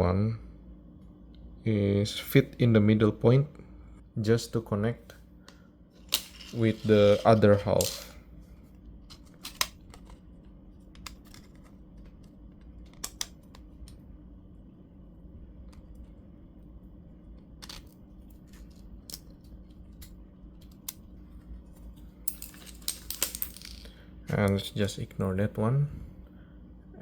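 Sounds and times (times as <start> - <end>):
faint steady hum: 0.0 - 27.0
plastic parts clicking together: 11.0 - 14.0.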